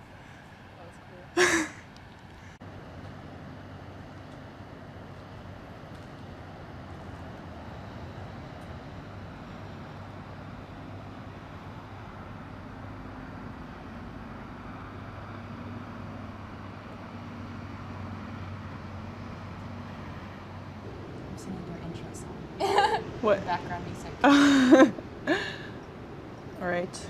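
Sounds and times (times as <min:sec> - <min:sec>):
muffled low rumble: 0:20.7 - 0:27.0.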